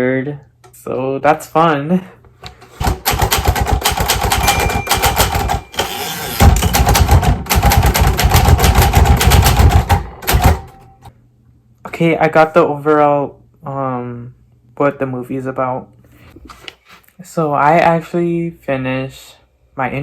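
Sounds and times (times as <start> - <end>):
manual typewriter typing: 2.8 - 11.0.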